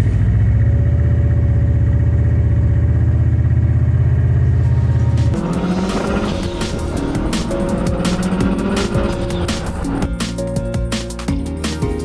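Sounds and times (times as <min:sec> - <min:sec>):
diesel engine idling: 0:01.7 - 0:10.1.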